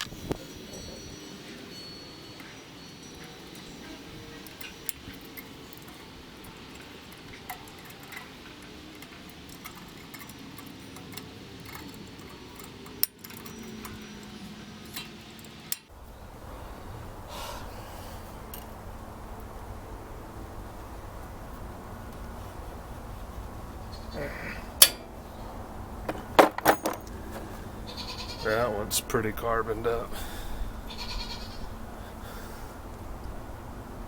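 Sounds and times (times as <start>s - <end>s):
metal parts and tools clinking: 0.0s - 15.9s, 24.8s - 25.1s, 26.1s - 27.6s.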